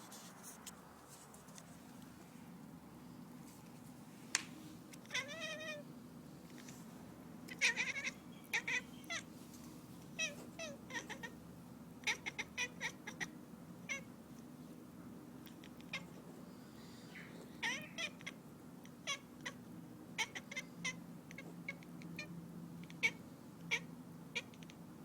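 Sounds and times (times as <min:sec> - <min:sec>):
cat meowing and chirping: 0:05.0 - 0:05.9, 0:07.5 - 0:09.3, 0:10.1 - 0:11.4, 0:12.0 - 0:14.1, 0:15.4 - 0:16.2, 0:17.2 - 0:24.8.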